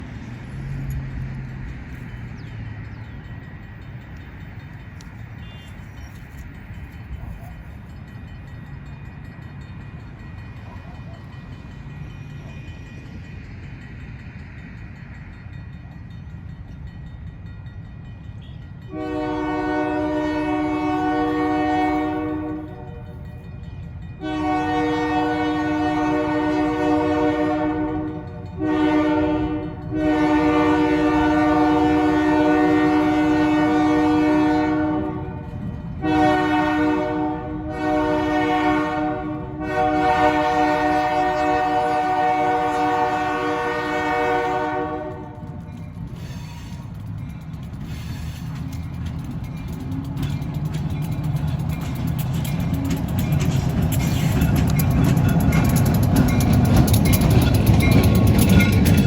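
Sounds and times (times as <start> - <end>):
diesel locomotive engine rumbling: 0.0 - 59.0
train air horn blasts: 5.4 - 6.0, 18.4 - 23.3, 24.2 - 46.9.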